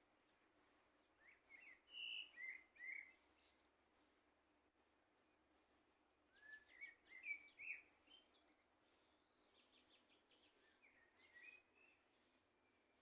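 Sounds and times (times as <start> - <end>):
bird whistling gliding notes: 1.2 - 3.3, 6.3 - 8.3, 9.6 - 12.9
high bird chirps: 1.2 - 4.1, 6.3 - 12.0.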